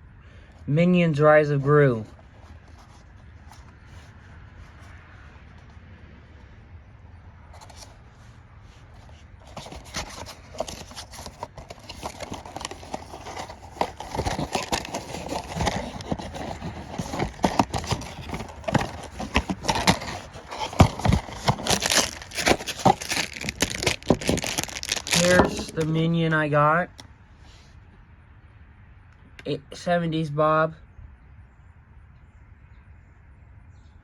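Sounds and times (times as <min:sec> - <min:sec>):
cardboard and foil packaging tearing: 0:09.5 - 0:25.9.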